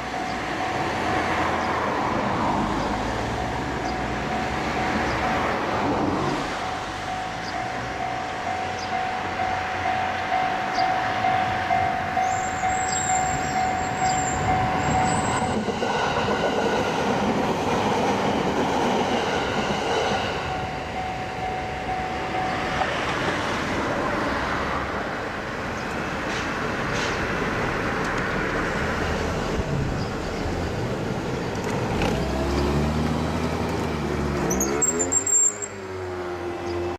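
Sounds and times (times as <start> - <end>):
level crossing alarm ringing: 6.6 - 15.7, 20.4 - 23.2.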